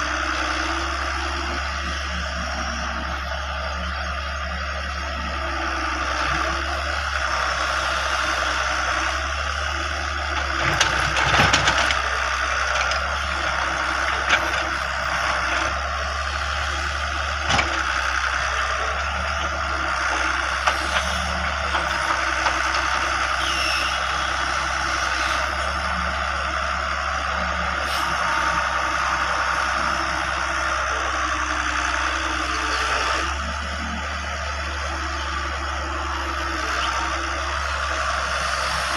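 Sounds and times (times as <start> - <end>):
excavator engine running: 0.0 - 38.9.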